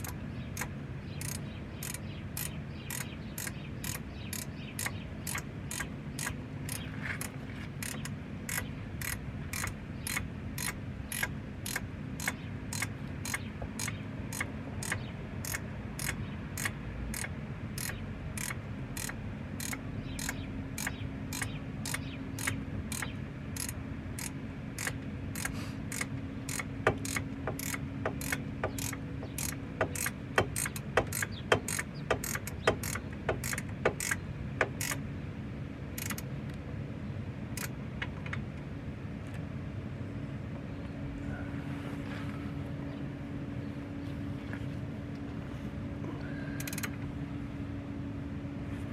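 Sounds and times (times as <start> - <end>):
ratchet wrench clicking: 0.0 - 35.0, 36.0 - 36.3, 37.6 - 37.8, 46.6 - 47.0.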